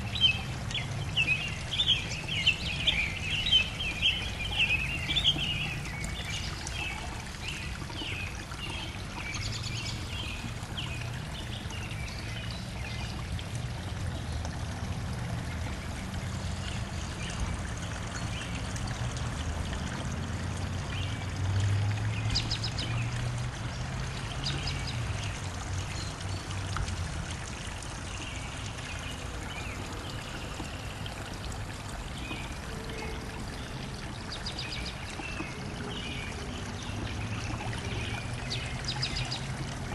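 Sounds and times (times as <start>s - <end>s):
birds chirping: 0.0s - 13.3s.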